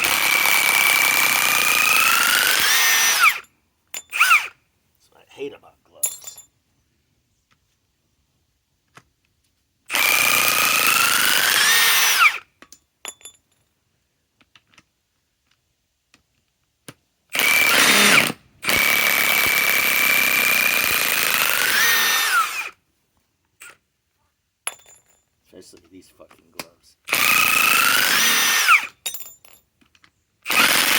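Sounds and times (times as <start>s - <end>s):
impact wrench hammering screws: 0.0s - 4.5s, 9.9s - 12.4s, 17.3s - 22.7s, 27.1s - 29.4s, 30.5s - 30.9s.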